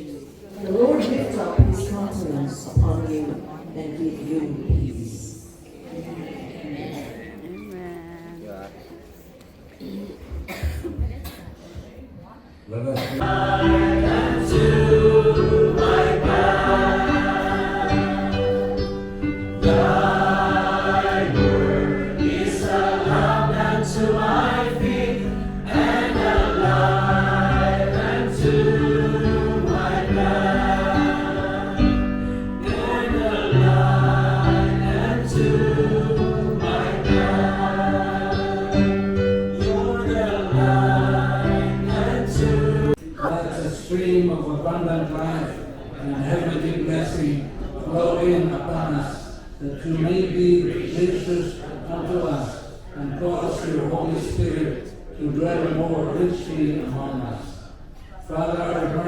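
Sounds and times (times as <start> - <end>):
group singing a hymn: 13.1 - 59.0.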